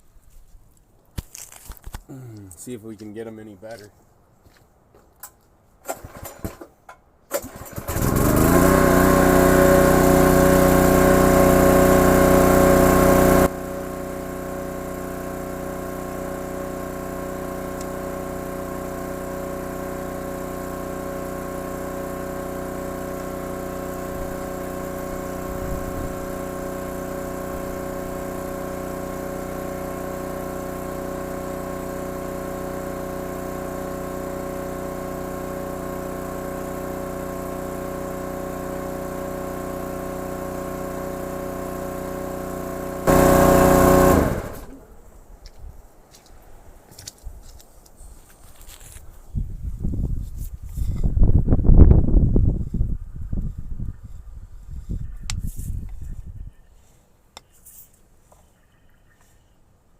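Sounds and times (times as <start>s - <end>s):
small engine running: 7.3s - 45.0s.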